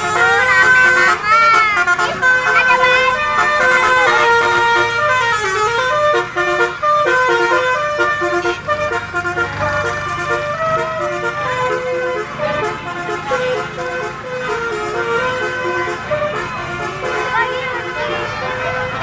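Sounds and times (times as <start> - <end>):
people shouting: 0.0 - 6.0
bus engines rumbling: 0.0 - 19.0
bus horns playing melodies: 0.0 - 19.0.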